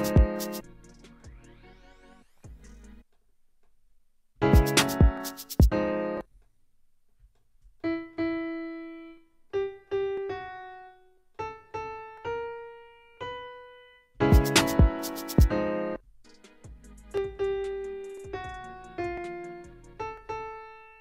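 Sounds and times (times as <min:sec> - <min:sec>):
drum and sample loop hit: 0:00.0 - 0:01.5, 0:04.4 - 0:05.8, 0:14.2 - 0:15.6, 0:16.2 - 0:19.6
keys playing slow melody: 0:07.8 - 0:21.0.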